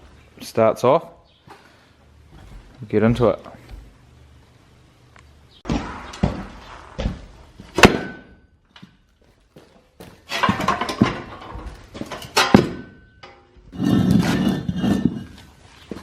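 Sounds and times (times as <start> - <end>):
knocks thuds and scraping: 5.6 - 9.0, 10.0 - 16.0.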